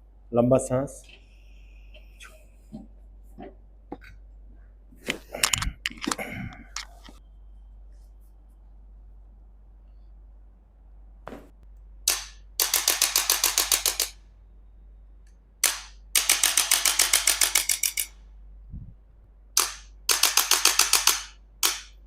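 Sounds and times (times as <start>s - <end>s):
adjusting instrument clicking: 5.1s - 7.1s.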